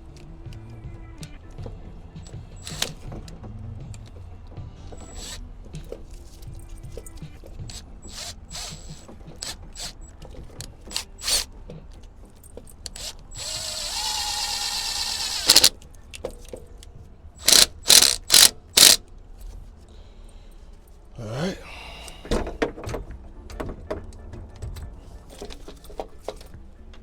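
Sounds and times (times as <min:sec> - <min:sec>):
small power tool whirring: 0:02.6 - 0:03.1, 0:05.0 - 0:05.4, 0:07.7 - 0:10.0, 0:10.9 - 0:11.5, 0:12.9 - 0:15.7, 0:17.4 - 0:19.0.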